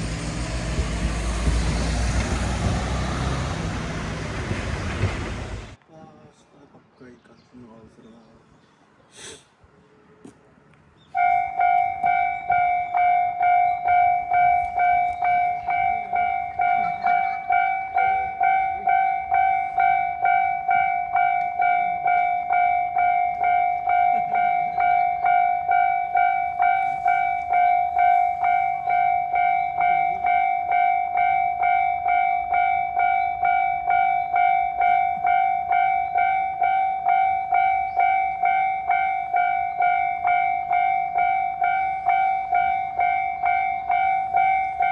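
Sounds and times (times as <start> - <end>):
railroad crossing alarm ringing: 0.0 - 5.8, 11.1 - 44.9.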